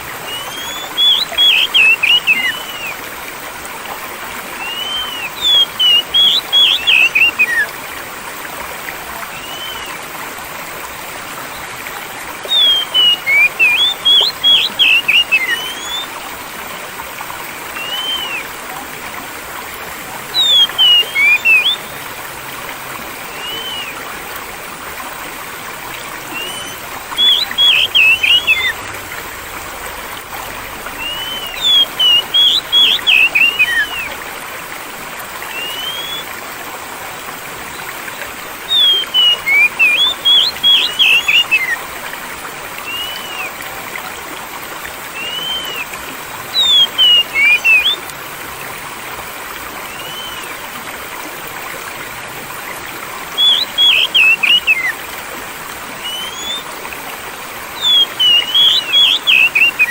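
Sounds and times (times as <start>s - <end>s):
flowing water: 0.0s - 59.9s
songbird whistling: 0.2s - 3.0s, 4.6s - 7.7s, 9.4s - 9.9s, 12.4s - 16.1s, 17.8s - 18.5s, 20.3s - 22.0s, 23.3s - 24.0s, 26.3s - 28.8s, 31.0s - 34.2s, 35.5s - 36.3s, 38.7s - 41.8s, 42.8s - 43.5s, 45.2s - 45.9s, 46.5s - 48.0s, 49.9s - 50.5s, 53.4s - 54.9s, 56.0s - 56.7s, 57.8s - 59.9s.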